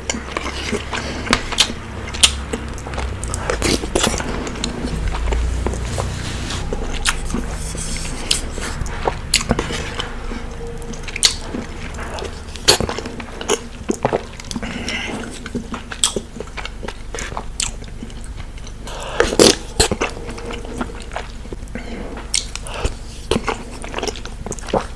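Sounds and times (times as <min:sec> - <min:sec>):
person chewing with mouth clicks: 0:00.0 - 0:24.9.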